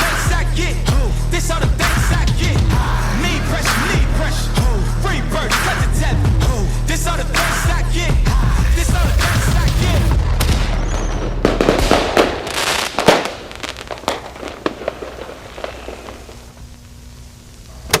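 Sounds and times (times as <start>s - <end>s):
music with heavy bass: 0.0s - 12.2s
fireworks bursting and crackling: 8.2s - 17.6s.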